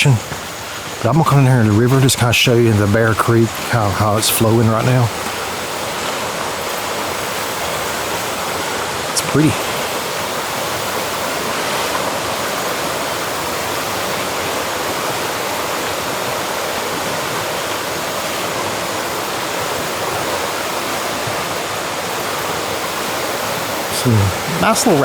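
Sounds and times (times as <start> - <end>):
water rushing over rapids: 0.0 - 25.0.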